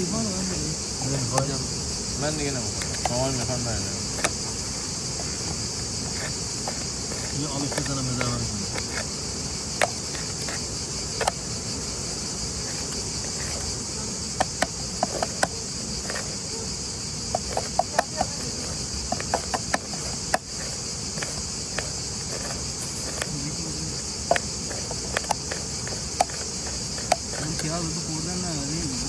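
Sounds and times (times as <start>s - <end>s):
crickets chirping: 0.0s - 29.0s
sharp clicks and ticks: 0.4s - 13.8s, 14.4s - 16.4s, 17.3s - 27.9s.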